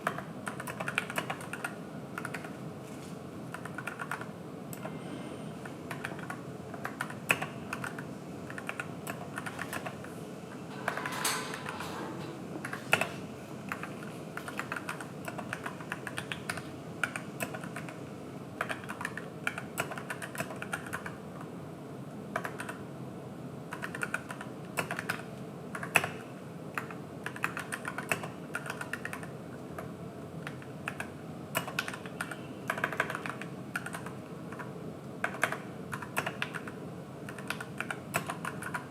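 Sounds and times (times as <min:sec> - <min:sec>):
mechanical keyboard typing: 0:00.0 - 0:02.6, 0:03.5 - 0:04.9, 0:05.9 - 0:10.1, 0:13.7 - 0:18.0, 0:18.6 - 0:21.2, 0:22.3 - 0:22.8, 0:23.7 - 0:38.9.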